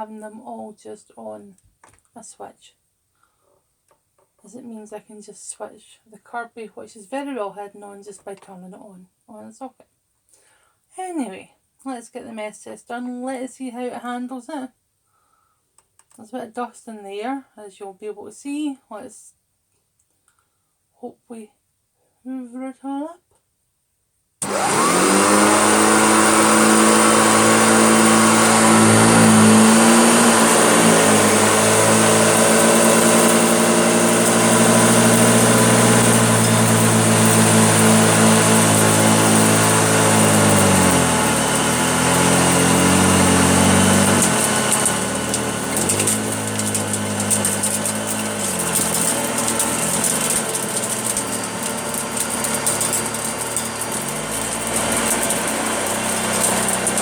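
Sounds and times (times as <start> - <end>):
vacuum cleaner motor hum: 24.4 - 57.0.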